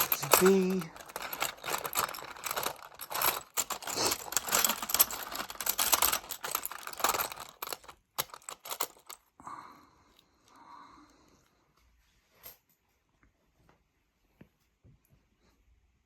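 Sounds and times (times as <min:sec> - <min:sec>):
coins clinking: 0:00.0 - 0:09.2.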